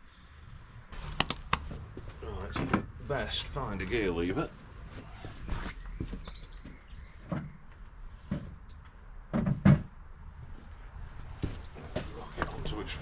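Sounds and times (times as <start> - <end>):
birds chirping: 3.2 - 8.8.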